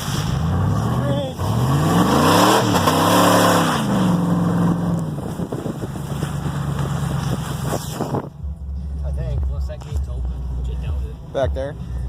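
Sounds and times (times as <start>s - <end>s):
pickup engine revving: 0.0s - 8.9s.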